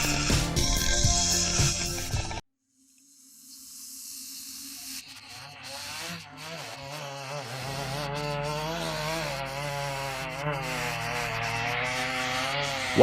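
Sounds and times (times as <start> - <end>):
chainsaw engine running: 5.1 - 13.0.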